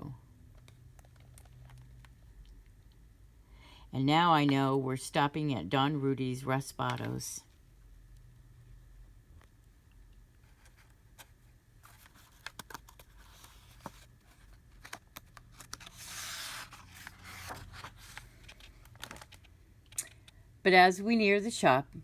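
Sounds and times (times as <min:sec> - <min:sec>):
small clicks of book handling: 0:00.5 - 0:03.0, 0:10.5 - 0:20.4
paper page rustling: 0:10.5 - 0:19.5.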